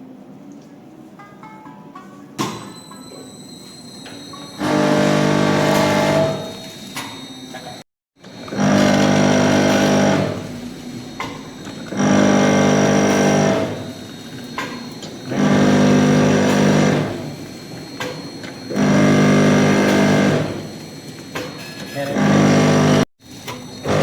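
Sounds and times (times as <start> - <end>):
machine motor hum: 4.6 - 6.8, 7.5 - 17.9, 18.6 - 21.1, 22.0 - 23.0, 23.8 - 24.0.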